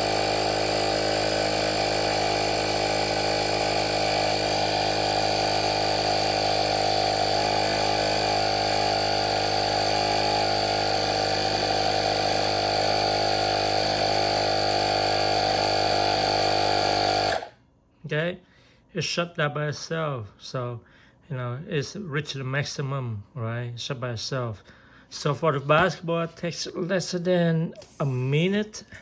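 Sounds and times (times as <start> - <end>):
air compressor running: 0.0 - 17.5, 27.8 - 29.0.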